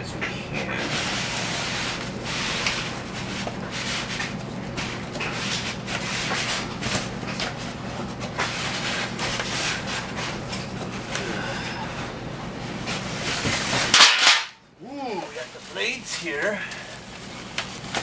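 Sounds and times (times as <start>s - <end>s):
cardboard and packing rustling: 15.0s - 18.0s.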